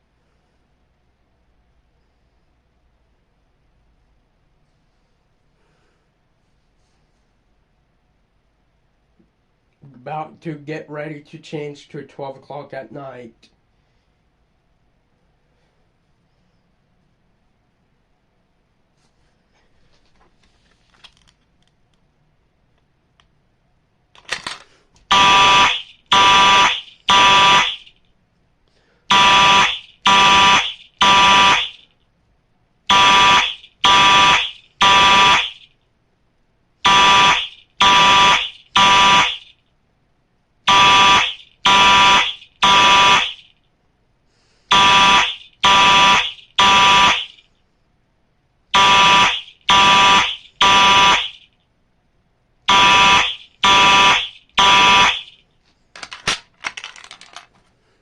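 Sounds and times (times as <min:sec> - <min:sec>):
fire alarm blasts: 0:25.1 - 0:28.0, 0:29.1 - 0:32.0, 0:32.9 - 0:35.8, 0:36.8 - 0:39.6, 0:40.7 - 0:43.6, 0:44.7 - 0:47.5, 0:48.7 - 0:51.6, 0:52.7 - 0:55.4.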